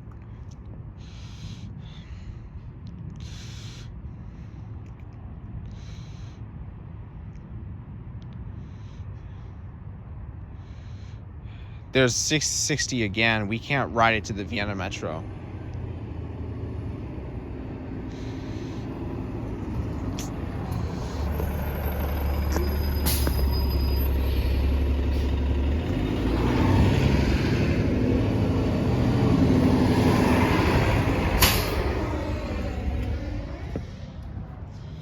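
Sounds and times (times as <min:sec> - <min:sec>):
bus engine running: 0:12.5 - 0:35.0.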